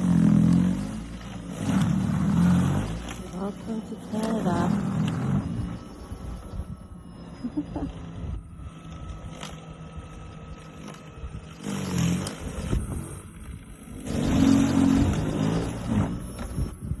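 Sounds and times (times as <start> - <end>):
electric snow blower motor hum: 0.0 - 17.0.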